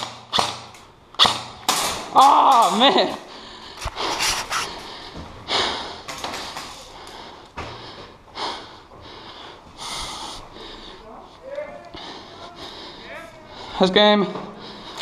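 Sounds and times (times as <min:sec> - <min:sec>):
person breathing hard: 0:03.2 - 0:15.0.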